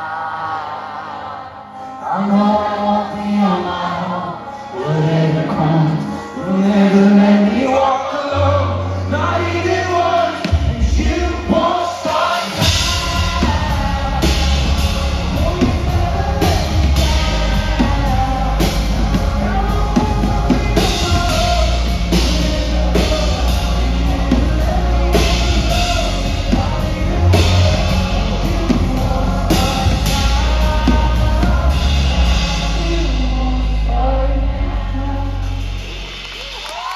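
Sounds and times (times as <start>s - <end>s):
guitars: 2.8s - 36.4s
heavy bass: 8.4s - 11.7s, 12.6s - 36.9s
rock band playing: 8.6s - 36.9s
drum kit with cymbals: 10.3s - 36.9s.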